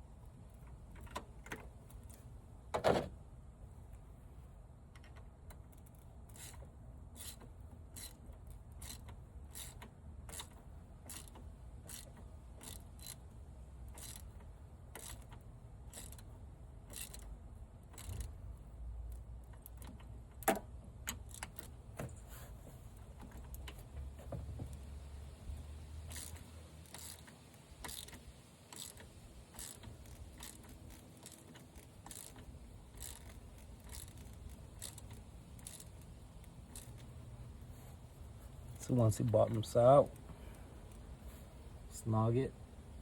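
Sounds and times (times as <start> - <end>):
ratchet clicking: 5.0 - 21.8, 23.1 - 37.4.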